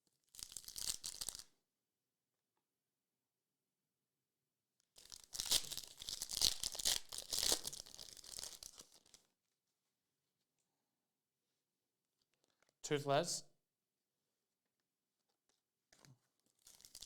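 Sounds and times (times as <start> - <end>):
foil wrapper tearing and crinkling: 0.2 - 1.5, 5.0 - 9.3, 16.4 - 17.0.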